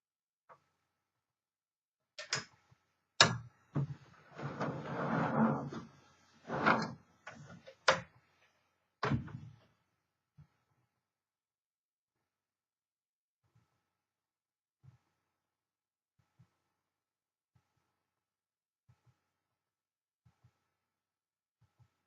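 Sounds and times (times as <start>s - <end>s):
object sliding scrape: 4.2s - 6.9s.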